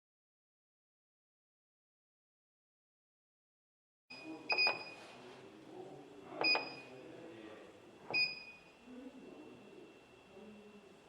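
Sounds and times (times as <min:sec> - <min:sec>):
short machine beeps: 0:04.1 - 0:05.0, 0:06.4 - 0:06.9, 0:08.1 - 0:08.7.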